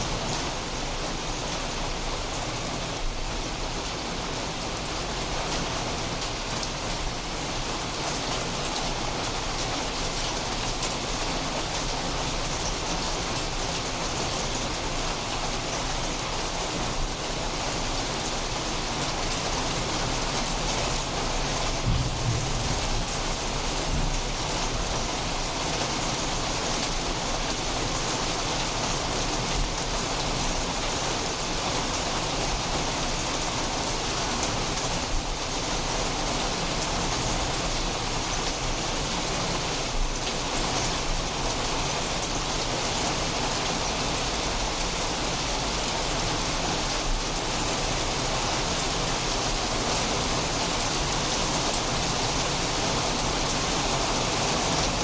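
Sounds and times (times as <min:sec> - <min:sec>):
steady rain falling: 0:00.0 - 0:55.0
louder rain taps: 0:21.7 - 0:25.0.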